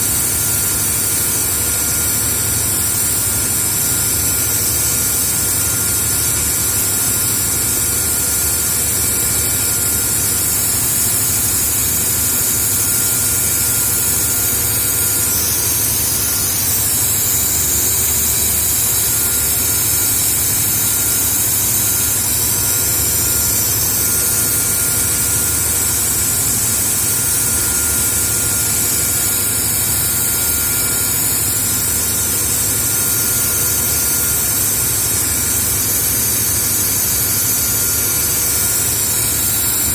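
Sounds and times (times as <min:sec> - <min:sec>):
cleaning jet hissing: 0:10.2 - 0:25.0.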